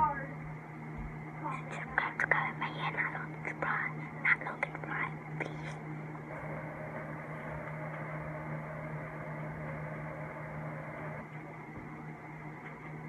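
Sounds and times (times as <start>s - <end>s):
low hum: 6.0s - 11.3s.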